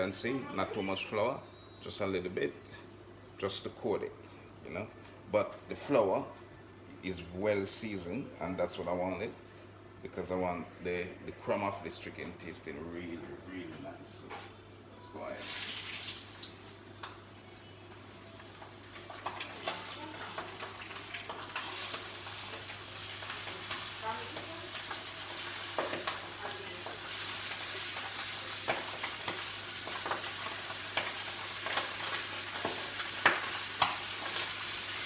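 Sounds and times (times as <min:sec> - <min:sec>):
chicken deep-frying in oil: 0:15.4 - 0:35.0
oil crackles and pops: 0:15.4 - 0:35.0.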